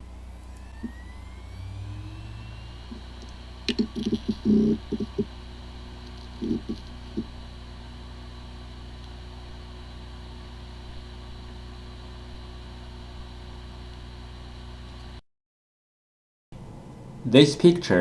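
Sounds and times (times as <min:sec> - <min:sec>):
hard disk spindle whine: 0:00.0 - 0:15.2
hard disk head clicking: 0:02.6 - 0:12.5.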